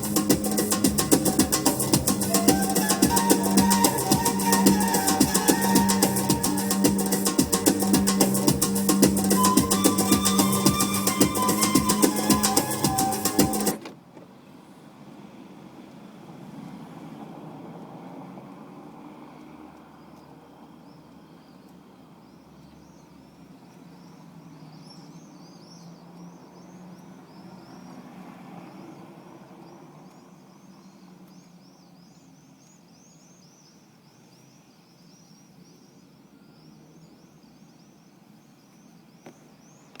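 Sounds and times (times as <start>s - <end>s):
car engine running: 0.0s - 2.3s
birds chirping: 0.0s - 13.8s.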